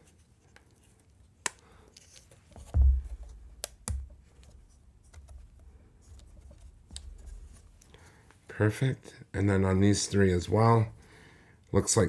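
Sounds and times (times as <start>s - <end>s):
plastic stabilizer snapping clicks: 1.4s - 1.6s.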